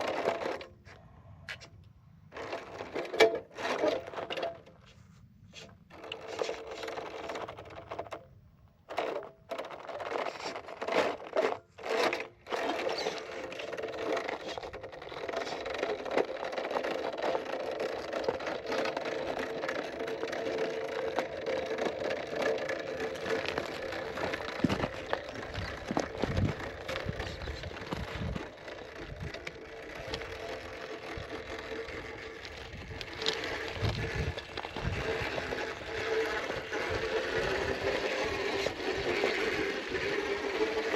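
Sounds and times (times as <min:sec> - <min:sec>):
tyres scraping on rock: 0:02.3 - 0:08.2, 0:08.9 - 0:40.9
electric motor whining: 0:10.1 - 0:40.9.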